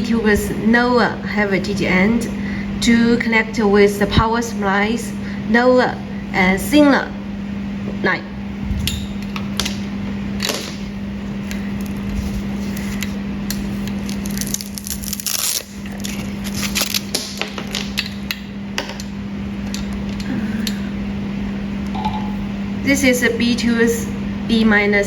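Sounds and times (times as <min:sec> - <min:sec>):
low hum: 0:18.0 - 0:25.0.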